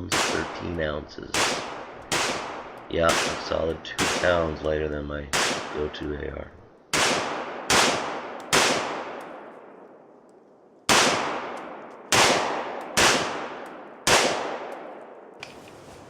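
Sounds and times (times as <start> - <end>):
rifle shots echoing: 0.0 - 15.4.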